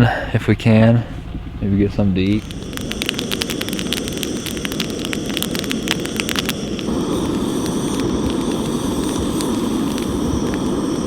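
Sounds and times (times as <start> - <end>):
campfire crackling and popping: 2.2 - 11.0
steady rushing noise: 2.2 - 11.0.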